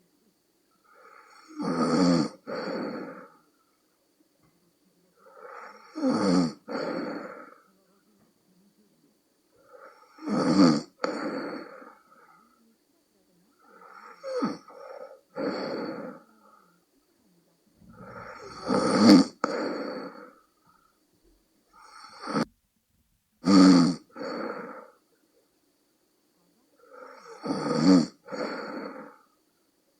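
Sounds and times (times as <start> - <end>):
person snoring: 0.9 - 3.4, 5.2 - 7.6, 9.7 - 12.0, 17.8 - 20.4, 21.8 - 22.5, 23.4 - 25.0, 26.9 - 29.2.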